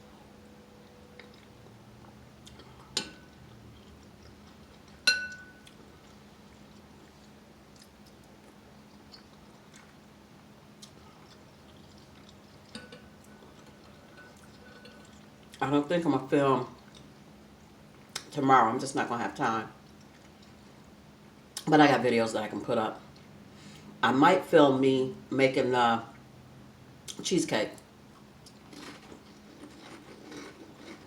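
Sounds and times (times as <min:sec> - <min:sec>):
low steady hum: 0:00.0 - 0:31.0
dishes and utensils clinking: 0:05.0 - 0:05.6.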